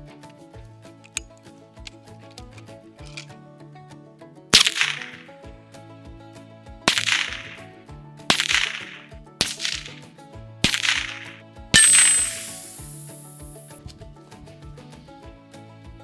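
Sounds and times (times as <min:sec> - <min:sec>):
air rifle shots: 0:04.6 - 0:05.2, 0:06.9 - 0:07.7, 0:08.3 - 0:10.0, 0:10.7 - 0:13.7
background music with beat: 0:04.6 - 0:05.2, 0:06.9 - 0:07.7, 0:08.3 - 0:10.0, 0:10.7 - 0:13.8.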